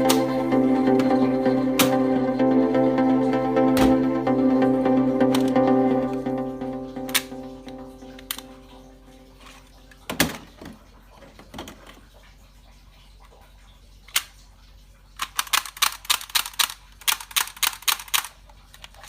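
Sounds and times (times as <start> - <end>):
plastic toy gun clicking: 15.2 - 19.0.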